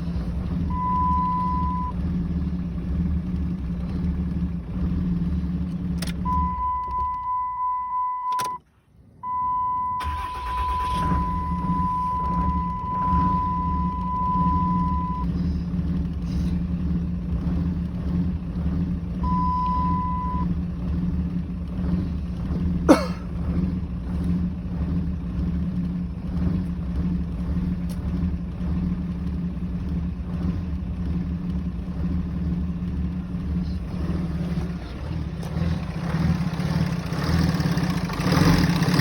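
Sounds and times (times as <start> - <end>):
car engine idling roughly: 0.0 - 6.2, 10.0 - 39.0
high beep: 0.7 - 2.0, 6.3 - 8.6, 9.2 - 15.3, 19.2 - 20.5.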